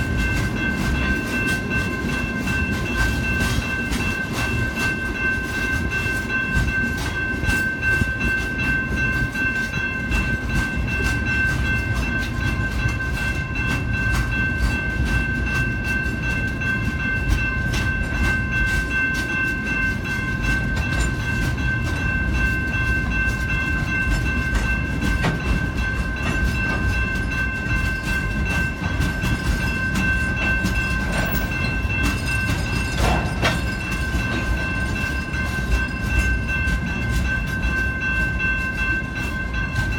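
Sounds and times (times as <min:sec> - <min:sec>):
train cars rumbling past: 0:00.0 - 0:39.9
wheels clicking over rails: 0:23.8 - 0:39.0.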